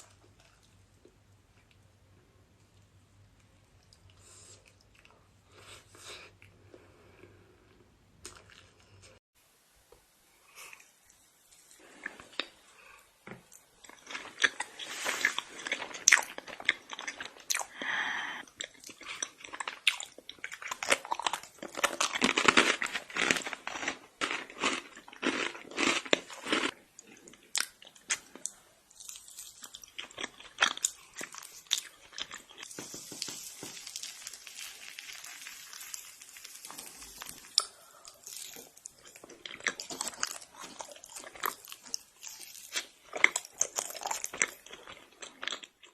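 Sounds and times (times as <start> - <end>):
person chewing crunchy food: 13.5 - 45.9.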